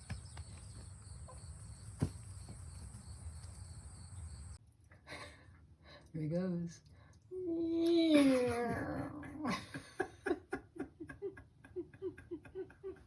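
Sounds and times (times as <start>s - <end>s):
crickets chirping: 0.0s - 4.6s.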